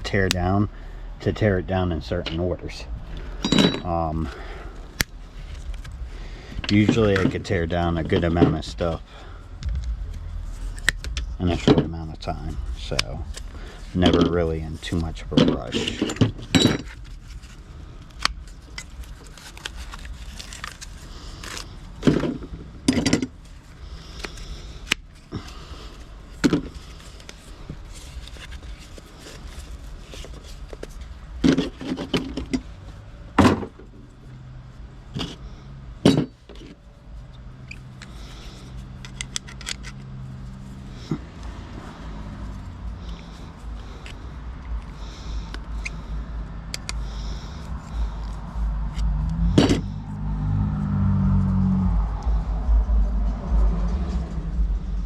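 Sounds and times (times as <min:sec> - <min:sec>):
low steady hum: 0:00.0 - 0:55.0
scrap metal clanking and rattling: 0:03.4 - 0:04.2, 0:15.3 - 0:17.1.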